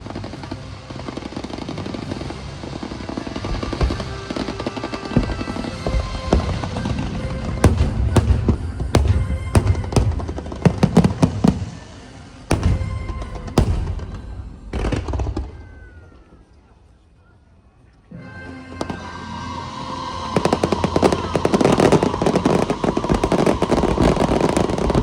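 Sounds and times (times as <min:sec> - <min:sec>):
music: 0:00.0 - 0:16.4, 0:17.8 - 0:25.0
fireworks crackling: 0:00.0 - 0:16.7, 0:18.9 - 0:25.0
fireworks shells bursting: 0:02.0 - 0:16.0.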